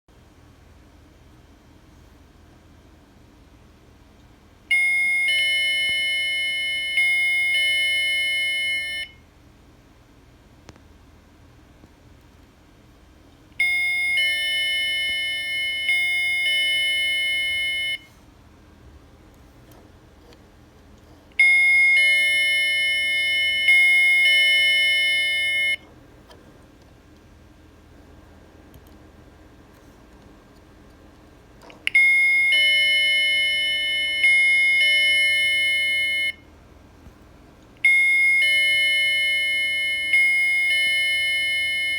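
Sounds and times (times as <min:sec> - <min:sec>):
electronic doorbell chime: 0:04.7 - 0:09.2, 0:13.6 - 0:18.1, 0:21.4 - 0:25.9, 0:31.9 - 0:36.4, 0:37.8 - 0:41.9.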